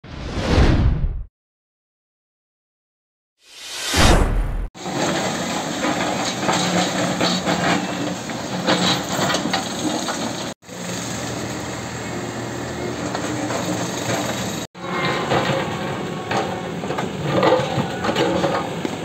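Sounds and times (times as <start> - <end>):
building renovation work: 4.7 - 19.0.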